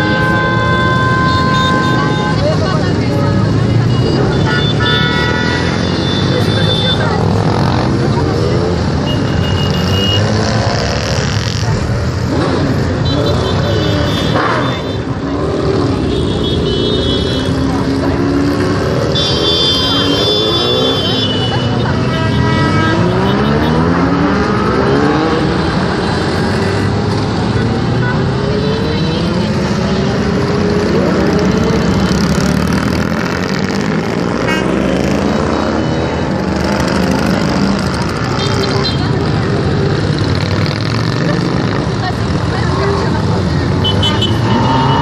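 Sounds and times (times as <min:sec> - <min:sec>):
motorcycle engines revving: 0:00.0 - 0:45.0.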